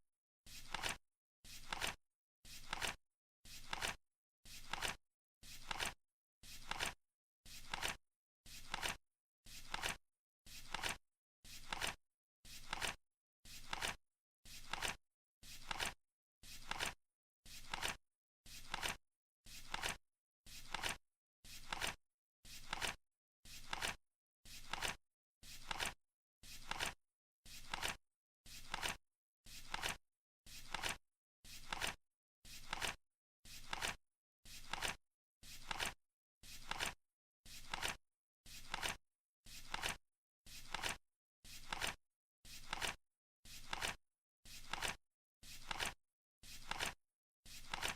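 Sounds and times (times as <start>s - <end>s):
flip clock card flapping: 0.6s - 1.0s, 1.6s - 3.0s, 3.6s - 4.0s, 4.6s - 5.0s, 5.6s - 6.0s, 6.6s - 7.0s, 7.6s - 8.0s, 8.6s - 9.0s, 9.7s - 10.0s, 10.7s - 11.0s, 11.6s - 12.0s, 12.6s - 13.0s, 13.6s - 14.0s, 15.6s - 16.0s, 16.6s - 17.0s, 17.6s - 18.0s, 18.6s - 19.0s, 20.7s - 21.0s, 21.6s - 22.0s, 22.6s - 23.0s, 23.6s - 24.0s, 24.6s - 25.0s, 25.6s - 26.0s, 26.6s - 27.0s, 27.6s - 28.0s, 28.6s - 29.0s, 29.7s - 30.0s, 30.7s - 31.0s, 31.6s - 32.0s, 32.6s - 33.0s, 33.6s - 34.0s, 34.6s - 35.0s, 35.6s - 36.0s, 36.6s - 37.0s, 37.6s - 38.0s, 38.6s - 39.0s, 39.7s - 40.0s, 40.7s - 41.0s, 41.6s - 42.0s, 42.6s - 43.0s, 43.6s - 44.0s, 44.6s - 45.0s, 45.6s - 46.0s, 46.6s - 47.0s, 47.6s - 47.9s.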